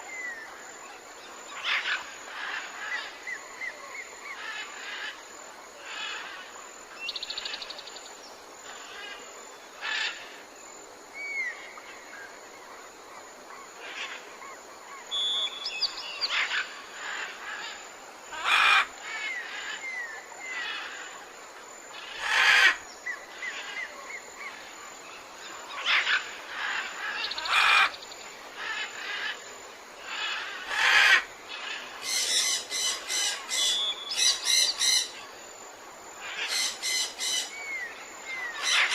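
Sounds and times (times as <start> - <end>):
background hiss: 0.0 - 38.9
birds chirping and trilling: 13.5 - 21.2, 21.9 - 35.4, 36.2 - 38.9.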